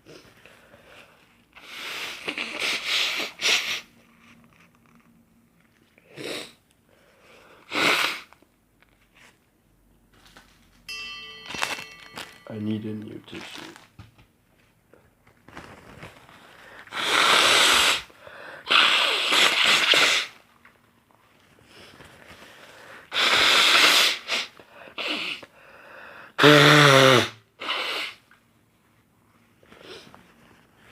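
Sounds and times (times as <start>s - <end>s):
man blowing his nose: 1.6s - 4.0s, 6.1s - 6.6s, 7.6s - 8.4s, 16.9s - 20.4s, 23.1s - 25.5s, 26.4s - 28.2s.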